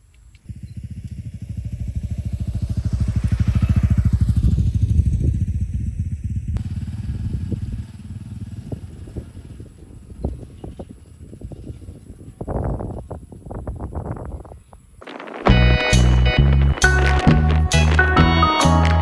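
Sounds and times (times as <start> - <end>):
vehicle engine passing by: 0.5 - 10.8.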